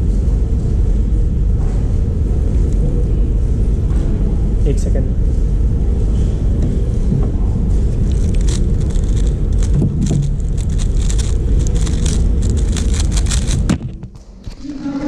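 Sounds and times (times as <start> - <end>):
low steady rumble: 0.0 - 15.0
puzzle cube clicking: 8.1 - 14.0.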